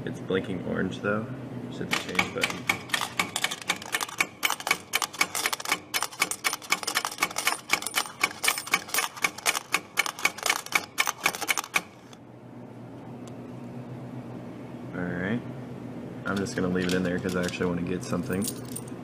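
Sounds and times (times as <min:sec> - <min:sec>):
coin changer paying out coins: 0:01.9 - 0:12.0, 0:16.3 - 0:19.0.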